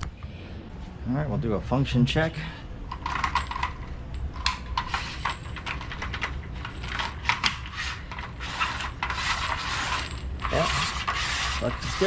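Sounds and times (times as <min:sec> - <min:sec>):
garage door belt clicking and rattling: 0:02.9 - 0:12.0
belt rubbing: 0:06.6 - 0:12.0.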